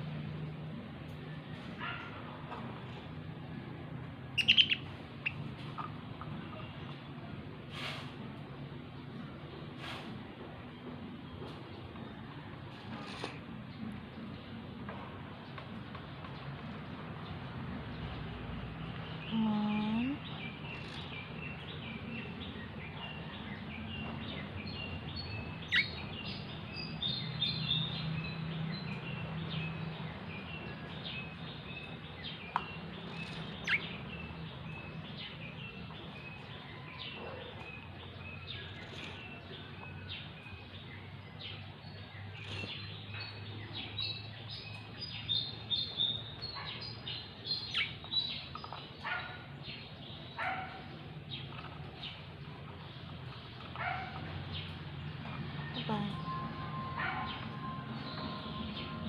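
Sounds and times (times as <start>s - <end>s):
budgie chirping and chattering: 4.4s - 5.9s, 33.0s - 34.0s.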